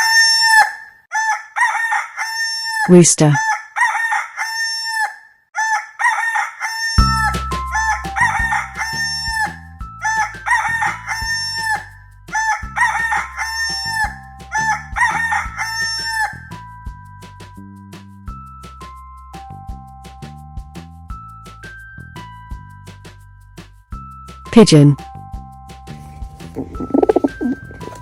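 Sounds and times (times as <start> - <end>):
rooster crowing: 3.8 - 6.8
background music: 7.0 - 28.0.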